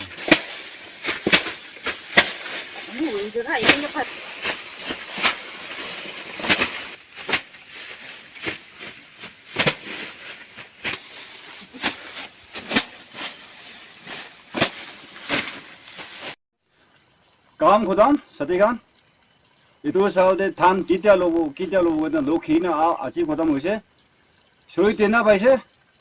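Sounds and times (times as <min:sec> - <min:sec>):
dry straw rustling: 0:00.0 - 0:16.4.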